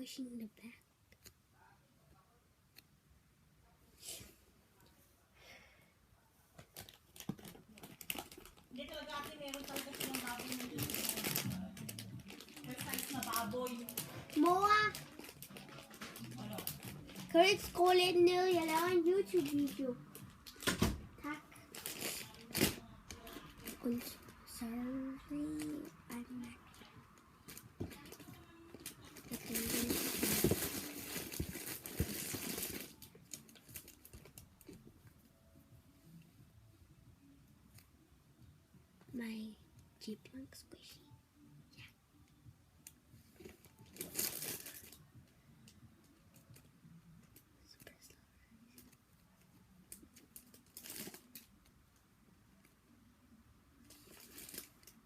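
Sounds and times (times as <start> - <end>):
hands rummaging through squishy toys: 6.6 - 20.6, 27.4 - 34.8, 43.4 - 45.0, 53.9 - 55.0.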